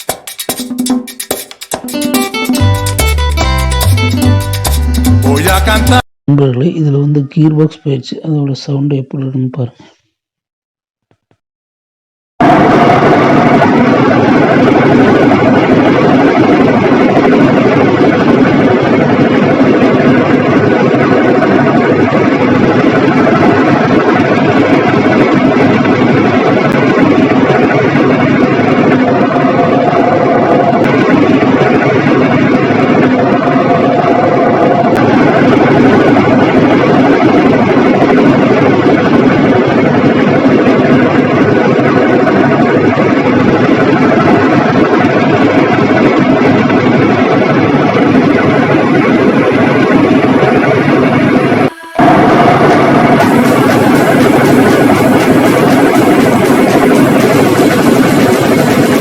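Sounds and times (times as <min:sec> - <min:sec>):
washing machine spinning: 0:12.4 - 0:59.0.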